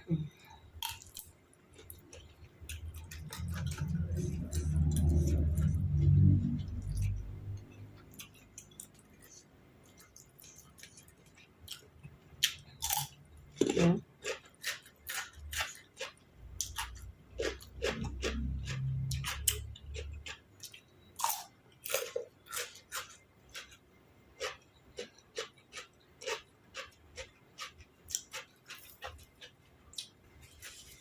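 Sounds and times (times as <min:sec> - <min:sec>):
person chewing and crunching: 0:00.8 - 0:31.0
low rumble: 0:02.8 - 0:08.0.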